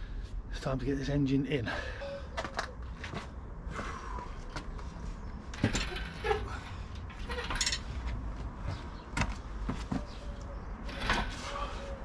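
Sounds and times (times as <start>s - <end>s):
metallic clinks and knocks: 5.5s - 8.1s.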